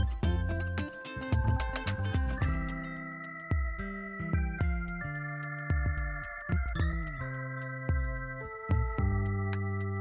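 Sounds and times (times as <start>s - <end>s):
electronic keyboard chords: 0.0s - 10.0s
steady beat: 0.0s - 10.0s.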